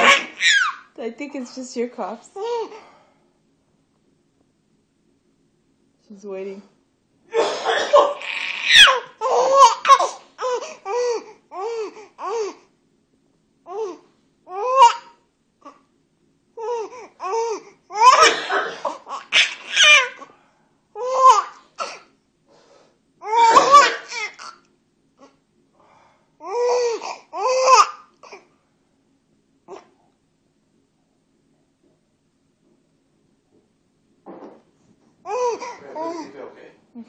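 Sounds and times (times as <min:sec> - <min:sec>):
baby laughing: 0:00.0 - 0:00.8, 0:08.1 - 0:12.5, 0:16.6 - 0:20.2, 0:23.2 - 0:24.6
man coughing: 0:07.3 - 0:08.2, 0:18.1 - 0:19.1, 0:23.3 - 0:24.5.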